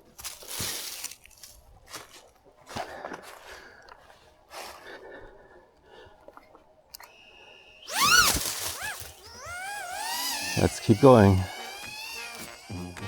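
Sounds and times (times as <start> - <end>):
drone motors whining: 7.0 - 13.0.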